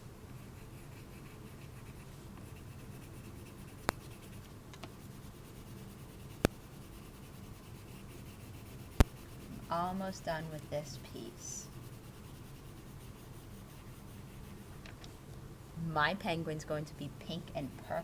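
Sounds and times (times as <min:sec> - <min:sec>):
crayon scribbling on paper: 0:00.3 - 0:14.8, 0:17.3 - 0:18.0.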